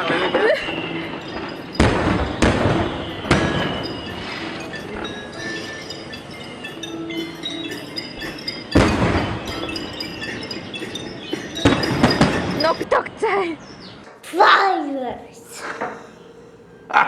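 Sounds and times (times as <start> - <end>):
fireworks bangs: 0.0 - 6.2, 8.7 - 10.4, 11.6 - 12.8
high tinkling tones: 0.0 - 12.9.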